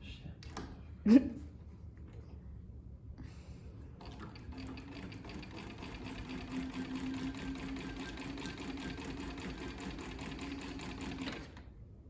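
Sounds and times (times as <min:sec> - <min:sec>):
sewing machine running: 0:04.0 - 0:11.6.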